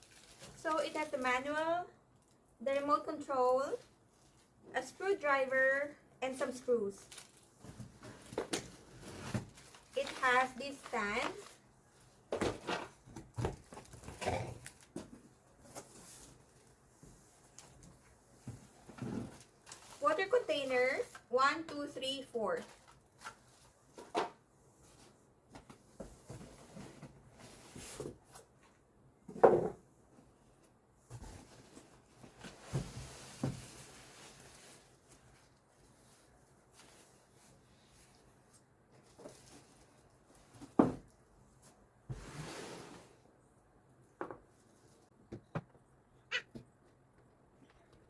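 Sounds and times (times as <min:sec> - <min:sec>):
rustling or sliding: 0:41.6 - 0:43.3.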